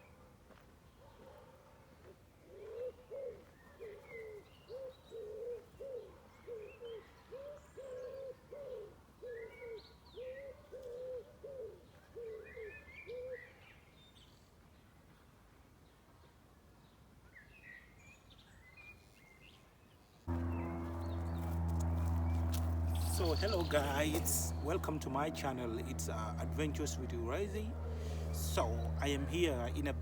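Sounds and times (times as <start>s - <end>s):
bird hooting call: 2.5s - 13.6s
small birds chirping: 20.3s - 25.2s.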